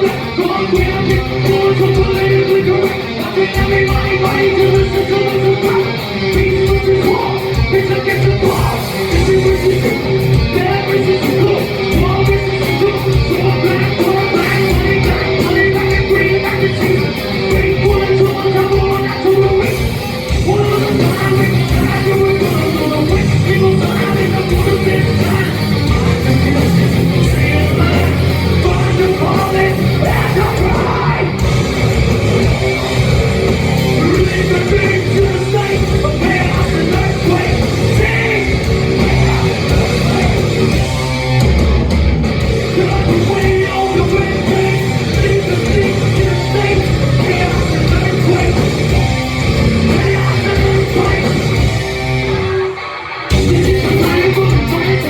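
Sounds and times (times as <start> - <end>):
shouted and sung vocals: 0.0 - 31.8, 32.4 - 41.1, 42.6 - 55.0
bass guitar: 0.0 - 55.0
distorted electric guitars: 0.0 - 55.0
drums: 0.0 - 55.0.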